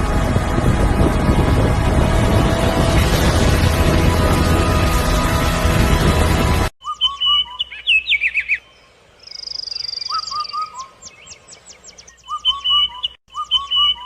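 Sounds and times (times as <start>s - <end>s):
songbirds singing: 6.8s - 14.0s.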